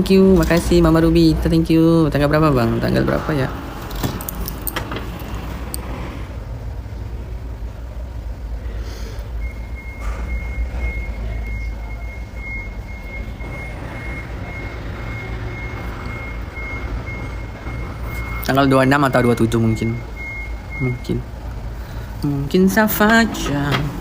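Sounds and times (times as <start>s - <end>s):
high electronic beep: 9.4s - 21.2s.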